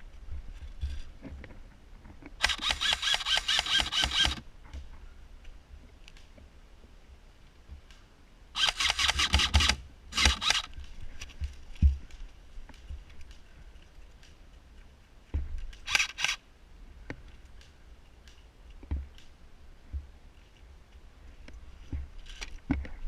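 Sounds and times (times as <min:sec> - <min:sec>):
airsoft gun full-auto bursts: 0:02.4 - 0:04.4, 0:08.6 - 0:10.7.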